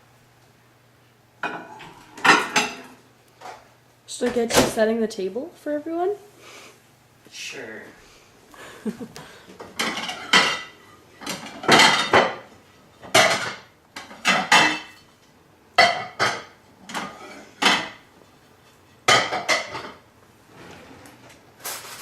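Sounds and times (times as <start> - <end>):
dishes and cutlery clinking: 1.4 - 3.0, 9.6 - 15.2, 15.8 - 20.0.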